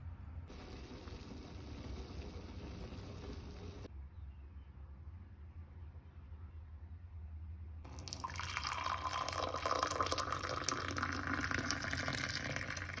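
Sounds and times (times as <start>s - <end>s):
low steady hum: 0.0s - 3.9s
drink pouring: 0.5s - 3.9s, 7.9s - 13.0s.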